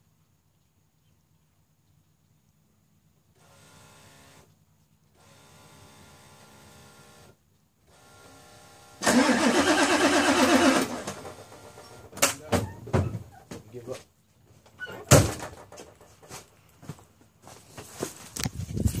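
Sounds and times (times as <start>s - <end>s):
engine cranking: 9.0s - 12.5s.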